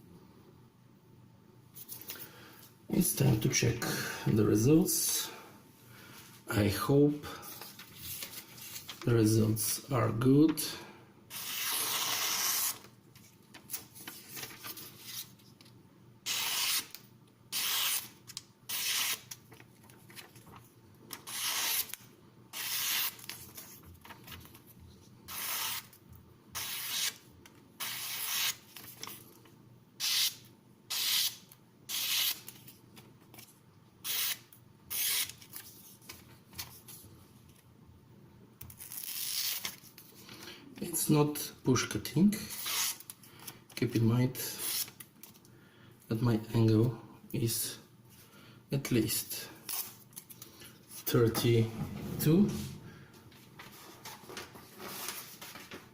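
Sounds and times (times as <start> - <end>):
knife slicing paper: 11.3 - 12.8, 16.3 - 19.4, 21.2 - 23.7, 25.3 - 25.9, 26.6 - 27.2, 27.8 - 29.1, 34.0 - 35.7.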